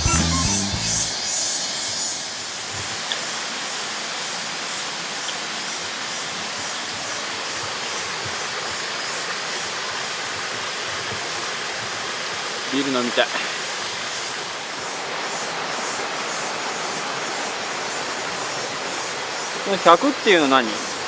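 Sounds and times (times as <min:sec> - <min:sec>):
background music: 0:00.0 - 0:01.2
stream water flowing: 0:00.0 - 0:21.0.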